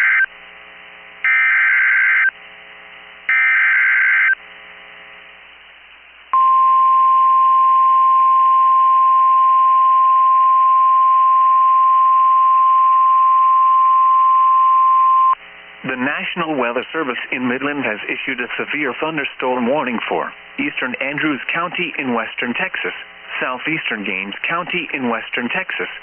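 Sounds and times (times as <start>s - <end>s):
steady warning alarm tone: 1.2s - 2.3s, 3.3s - 4.4s
loud digital data buzz: 1.3s - 2.3s, 3.3s - 4.4s.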